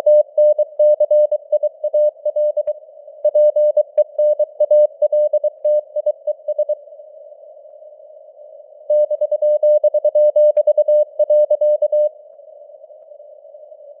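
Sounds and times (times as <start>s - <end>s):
morse code beeps: 0.0s - 2.7s, 3.3s - 6.8s, 8.9s - 12.1s.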